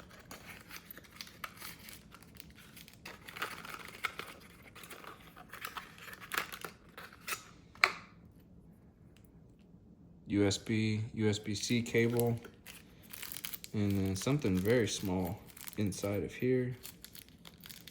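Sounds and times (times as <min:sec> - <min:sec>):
packaging crinkling and rustling: 0:00.0 - 0:08.0, 0:11.6 - 0:17.9.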